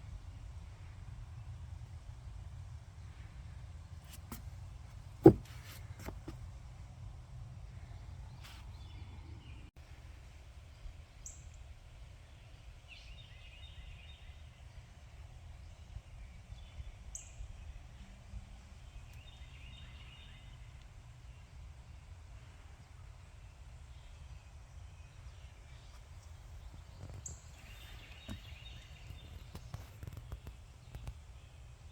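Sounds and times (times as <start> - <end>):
small birds chirping: 23.9 - 31.9.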